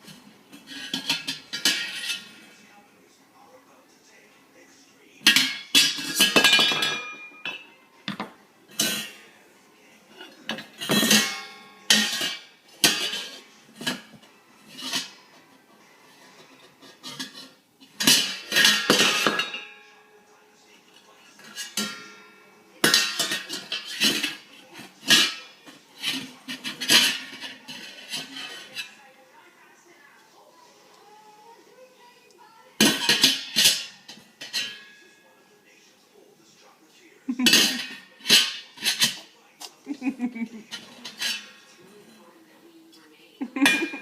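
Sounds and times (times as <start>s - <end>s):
metal pots and pans clattering: 0.0s - 2.5s, 5.2s - 9.3s, 10.1s - 19.8s, 20.9s - 29.0s, 32.8s - 35.2s, 37.3s - 42.3s, 43.4s - 44.0s.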